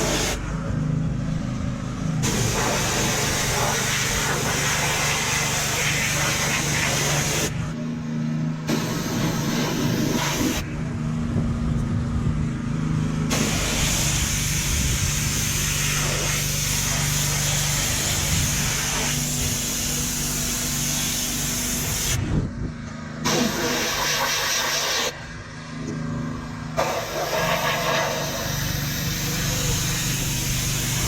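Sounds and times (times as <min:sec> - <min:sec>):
pressure washer motor humming: 0:00.0 - 0:00.4, 0:01.0 - 0:07.7, 0:08.7 - 0:11.2, 0:12.8 - 0:22.2, 0:23.0 - 0:31.0
pressure washer spray hissing: 0:00.0 - 0:00.4, 0:02.2 - 0:07.6, 0:08.7 - 0:10.6, 0:13.3 - 0:22.2, 0:23.2 - 0:25.2, 0:26.8 - 0:31.0.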